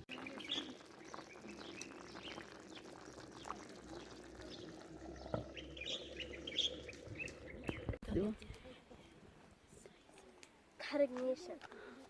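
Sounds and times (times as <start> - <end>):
small birds chirping: 0.0 - 8.8.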